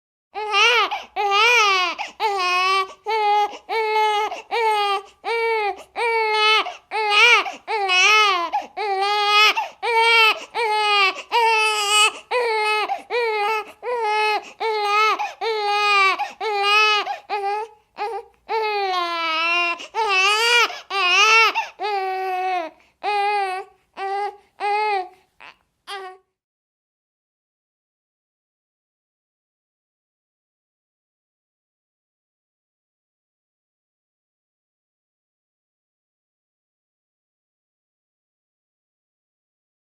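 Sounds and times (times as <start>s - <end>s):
infant crying: 0.4s - 26.4s.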